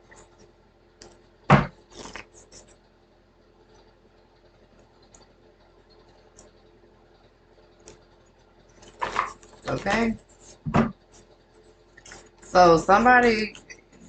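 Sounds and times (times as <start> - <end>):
sharp thump: 1.5 - 1.8
faint ticks: 3.7 - 8.8.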